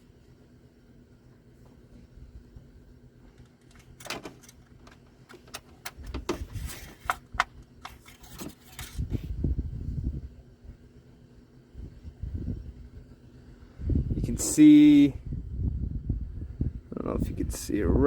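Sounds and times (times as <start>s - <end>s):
low rumbling handling noise: 1.2s - 10.8s
dipstick clicks and scrapes: 3.4s - 9.1s.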